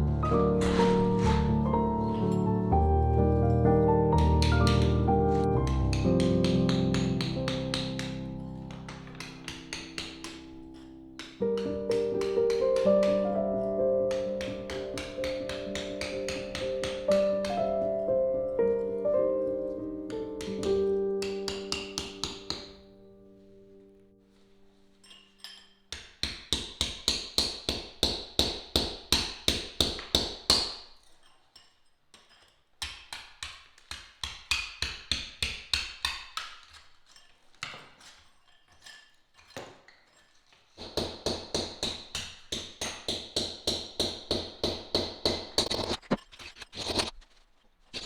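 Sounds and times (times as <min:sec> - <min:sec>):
hammer striking chisel on brick: 0:00.2 - 0:02.5, 0:04.1 - 0:17.9, 0:20.1 - 0:22.8, 0:25.9 - 0:30.9, 0:32.8 - 0:36.8, 0:40.8 - 0:45.8.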